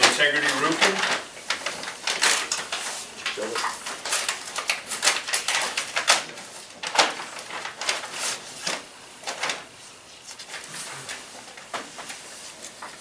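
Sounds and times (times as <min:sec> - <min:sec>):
paper rustling and crinkling: 0:00.0 - 0:13.0.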